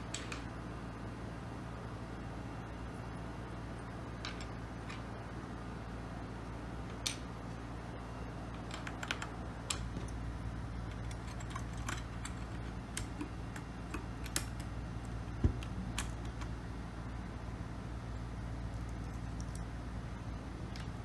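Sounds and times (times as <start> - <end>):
heavy keyboard thump: 15.4 - 15.8.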